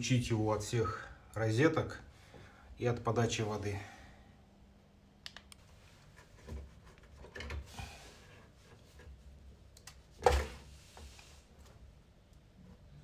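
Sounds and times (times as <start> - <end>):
handling rustles and knocks: 5.8 - 11.9.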